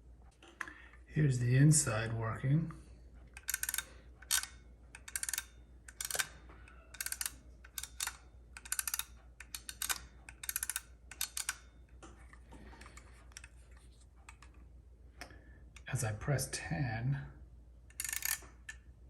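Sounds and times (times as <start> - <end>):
adding machine ratcheting clicks: 3.3 - 11.7, 17.9 - 18.8.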